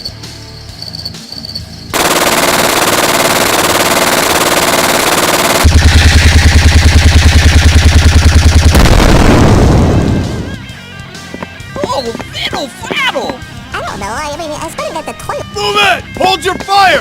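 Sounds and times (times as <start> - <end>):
machine-gun fire: 1.9 - 10.3.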